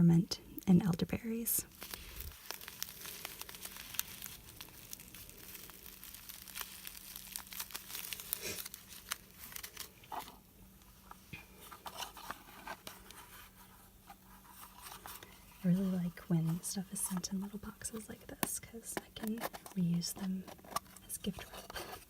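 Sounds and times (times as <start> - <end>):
paper packaging crinkling: 0.8 - 22.0.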